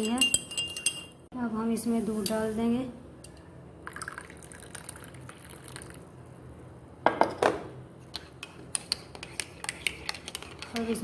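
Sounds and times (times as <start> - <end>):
milk trickling into cup: 3.8 - 6.0.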